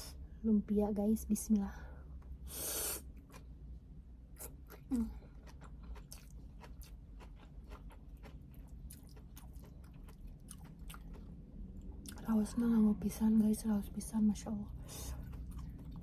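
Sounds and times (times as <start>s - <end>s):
crunchy chewing: 4.4s - 12.2s, 14.8s - 16.0s.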